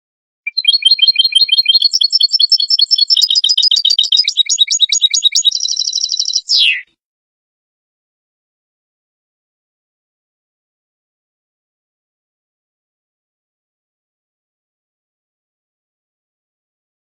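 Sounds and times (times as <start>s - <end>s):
goldfinch singing: 0.5s - 6.8s.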